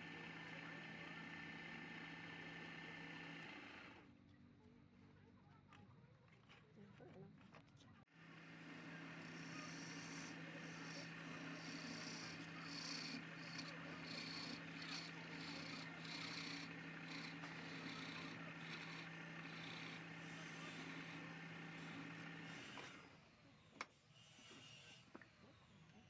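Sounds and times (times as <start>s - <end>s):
wood lathe motor hum: 8.2s - 23.2s
spinning wood hissing: 9.3s - 22.0s.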